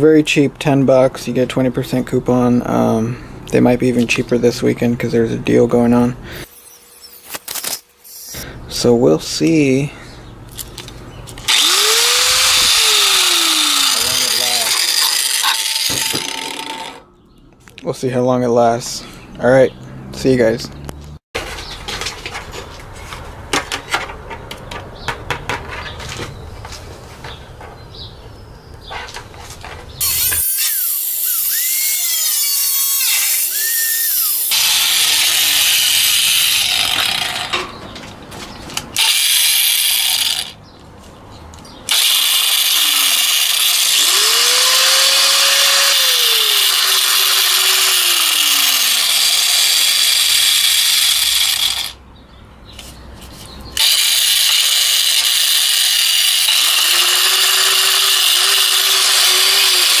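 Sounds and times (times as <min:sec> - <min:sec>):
angle grinder grinding: 0:06.3 - 0:08.4, 0:11.4 - 0:17.1, 0:30.0 - 0:37.6, 0:39.0 - 0:40.6, 0:41.9 - 0:52.0, 0:53.8 - 1:00.0.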